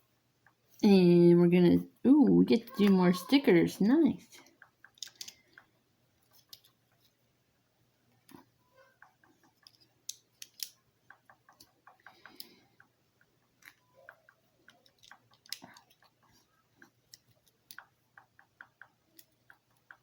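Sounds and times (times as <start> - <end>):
small plastic clicks and taps: 4.4 - 7.1, 8.2 - 20.0.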